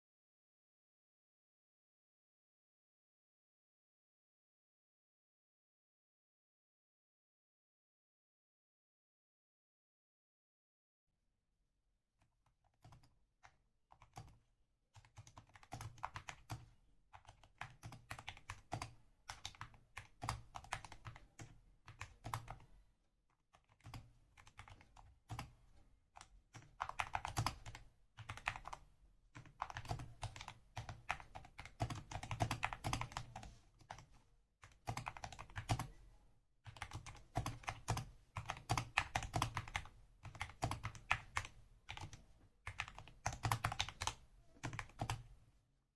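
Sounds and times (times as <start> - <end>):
keyboard typing: 12.7 - 14.4, 15.0 - 22.8, 23.5 - 36.0, 36.7 - 45.4.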